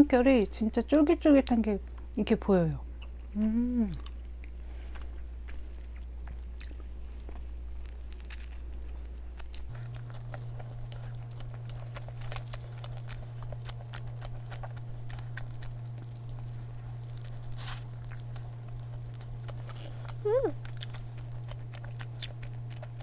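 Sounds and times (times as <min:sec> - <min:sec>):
steady low hum: 0:00.0 - 0:23.0
chewing with wet mouth clicks: 0:03.0 - 0:23.0.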